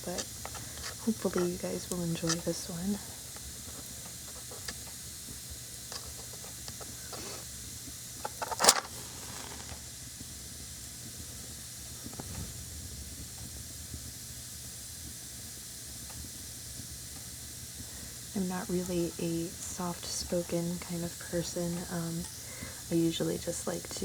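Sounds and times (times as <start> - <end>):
match striking and flaring: 0.0 - 7.5, 8.2 - 10.2
steady faint hiss: 0.0 - 24.0.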